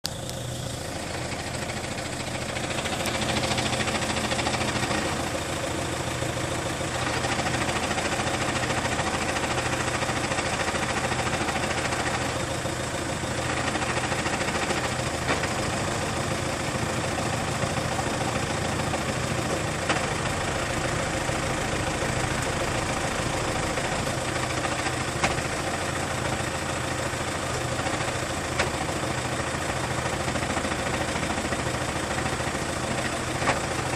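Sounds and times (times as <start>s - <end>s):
sharp engine clicks: 0.0s - 1.8s
diesel engine idling: 0.0s - 33.9s.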